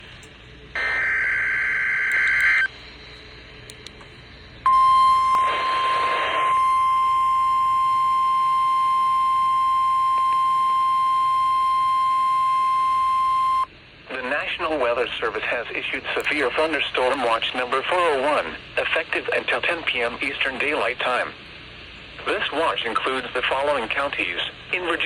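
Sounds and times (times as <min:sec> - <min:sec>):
steady single-pitch alert tone: 0:04.7 - 0:13.7
static hiss: 0:13.8 - 0:25.0.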